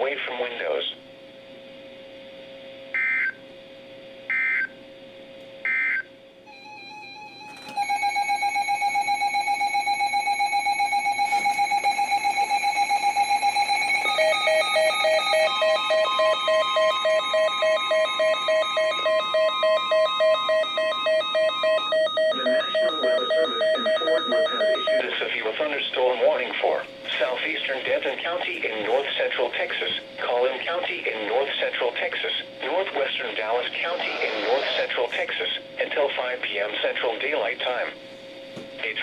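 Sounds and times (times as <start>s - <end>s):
synthesized electronic alert tones: 11.3s - 25.2s
digital data bursts: 12.5s - 25.5s, 33.3s - 35.6s.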